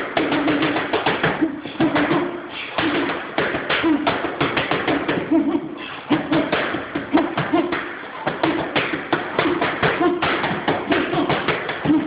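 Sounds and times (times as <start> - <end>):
boxing gloves smacking mitts: 0.0 - 5.4, 6.1 - 12.0
person grunting: 1.3 - 3.1, 5.1 - 7.8, 9.4 - 12.0.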